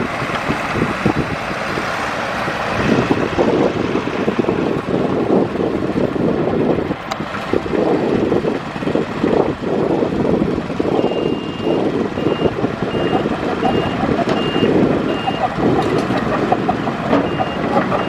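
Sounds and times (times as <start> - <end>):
heavy diesel machine running: 0.0 - 18.0
reversing alarm beeping: 11.0 - 15.5, 17.2 - 18.0.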